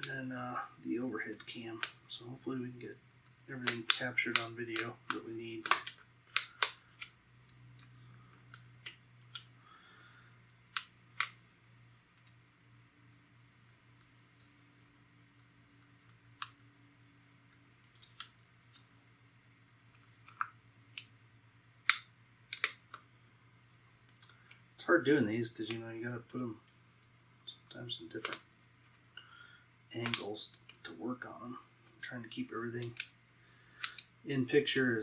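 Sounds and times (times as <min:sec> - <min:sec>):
faint low hum: 0:00.0 - 0:35.0
razor blades clicking and tapping: 0:03.6 - 0:07.9.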